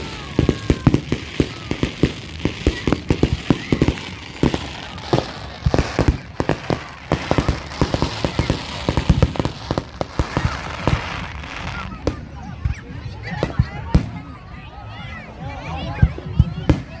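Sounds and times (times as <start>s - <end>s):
fireworks bangs: 0.0s - 12.7s.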